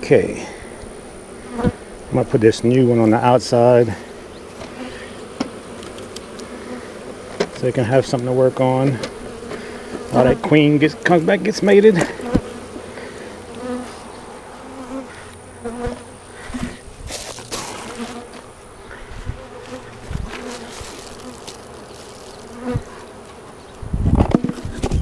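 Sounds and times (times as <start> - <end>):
bees buzzing: 0.0 - 25.0
knocks from handling hive: 4.5 - 6.5, 7.2 - 8.3, 8.9 - 11.2, 11.9 - 12.9, 19.7 - 23.4, 24.0 - 25.0.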